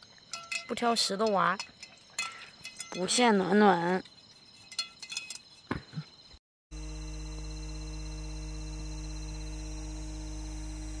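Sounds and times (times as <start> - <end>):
hum of held tones: 6.7 - 11.0
strong low drone: 6.8 - 11.0.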